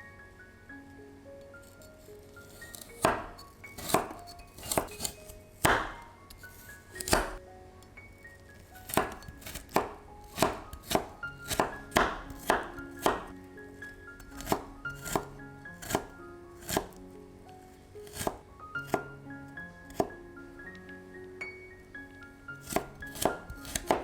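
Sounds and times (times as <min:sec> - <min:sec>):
soft mallet background music: 0:00.0 - 0:24.0
knife chopping on cutting board: 0:02.5 - 0:07.4, 0:08.8 - 0:13.3, 0:14.3 - 0:17.0, 0:18.0 - 0:19.1, 0:19.9 - 0:20.2, 0:22.6 - 0:24.0.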